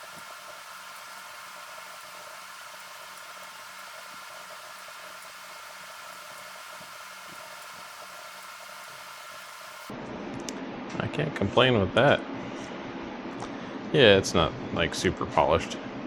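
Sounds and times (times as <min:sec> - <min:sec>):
steady hiss: 0:00.0 - 0:09.9.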